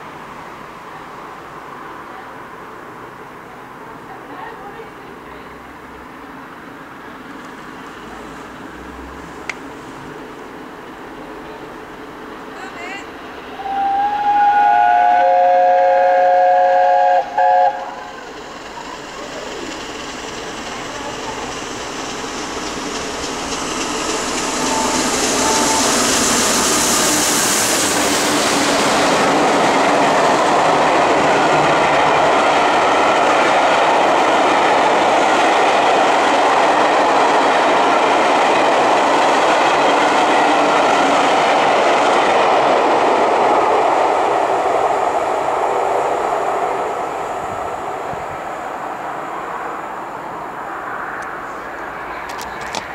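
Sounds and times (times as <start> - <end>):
train wheels rushing on rail: 0.0 - 52.9
steam locomotive whistle chord: 13.6 - 18.1.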